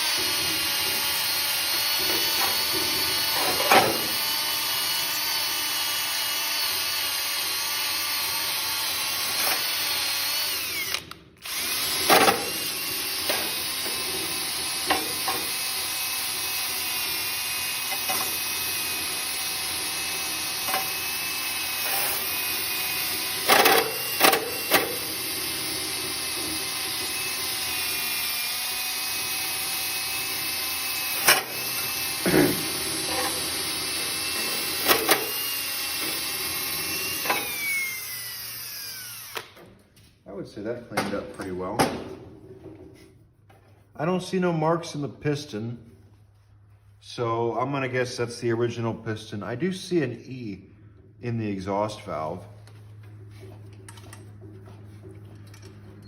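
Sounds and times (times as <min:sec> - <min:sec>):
drill motor whine: 0:00.0 - 0:39.6.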